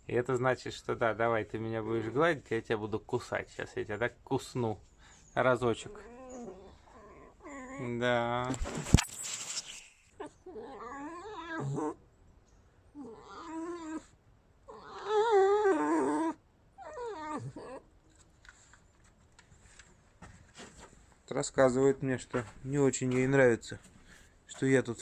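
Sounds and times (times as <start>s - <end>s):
fox whining: 5.7s - 9.1s, 9.7s - 12.0s, 12.9s - 18.2s.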